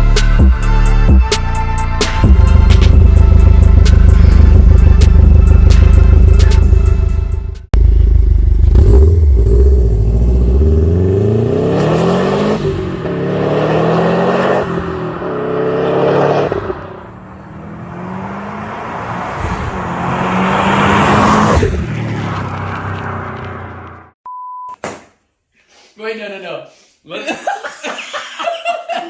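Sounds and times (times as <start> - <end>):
turbocharged engine accelerating hard: 2.2 - 24.1.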